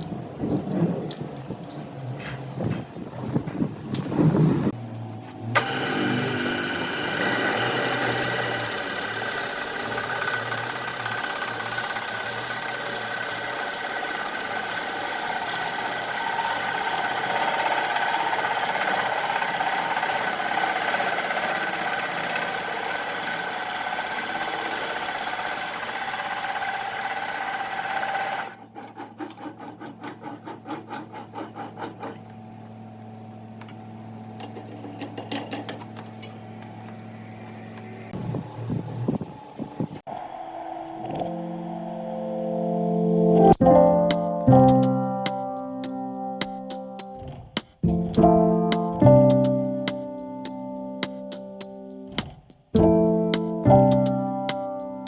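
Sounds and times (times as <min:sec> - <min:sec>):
lathe motor hum: 0:05.6 - 0:28.6
lathe tool scraping wood: 0:05.6 - 0:32.2.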